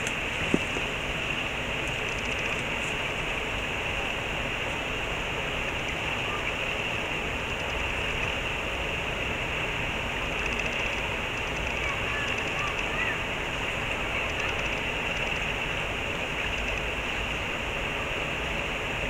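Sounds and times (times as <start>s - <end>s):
river rushing: 0.0s - 19.0s.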